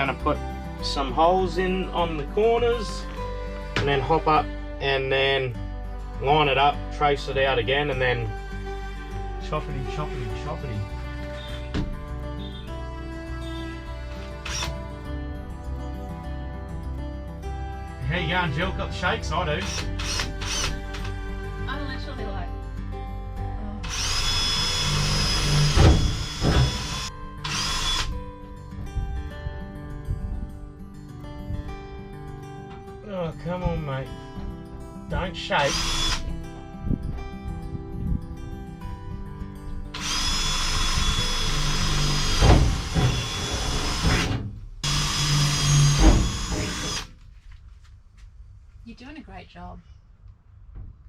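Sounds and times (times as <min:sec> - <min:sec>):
power drill drilling: 0:13.5 - 0:15.0, 0:19.6 - 0:21.2, 0:23.8 - 0:28.2, 0:35.6 - 0:36.3, 0:40.0 - 0:47.1
thud: 0:42.4 - 0:43.1.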